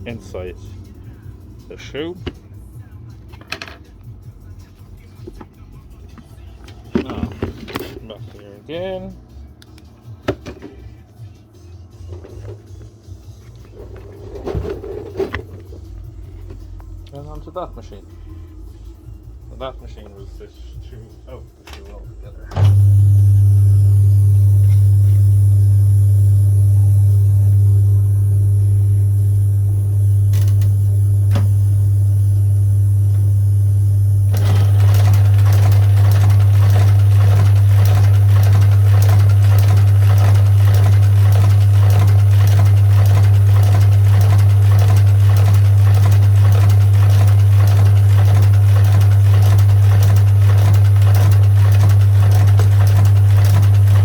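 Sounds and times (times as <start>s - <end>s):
machine motor humming: 22.5s - 54.0s
stitching machine clatter: 34.3s - 54.0s.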